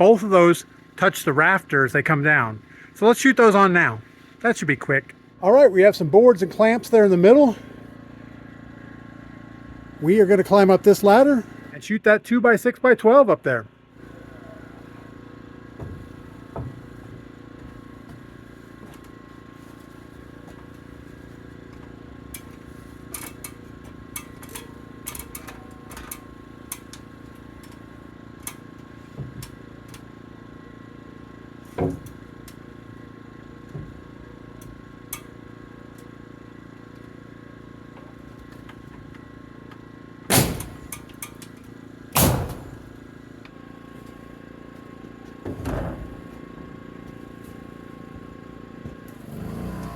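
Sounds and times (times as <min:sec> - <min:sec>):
nail gun shots: 0:40.3 - 0:41.1, 0:42.2 - 0:42.9.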